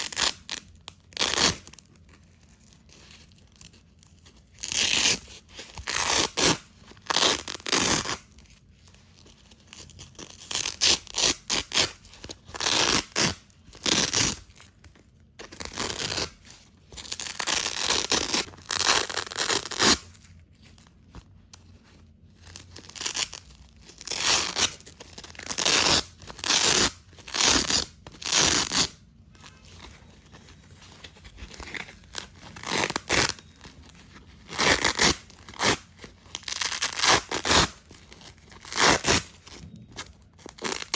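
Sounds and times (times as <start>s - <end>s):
velcro strips ripping: 0.0s - 0.6s, 1.2s - 1.8s, 4.6s - 8.3s, 10.2s - 14.7s, 15.4s - 16.4s, 17.0s - 20.1s, 22.4s - 29.0s, 31.6s - 33.6s, 34.4s - 39.3s, 40.5s - 40.9s.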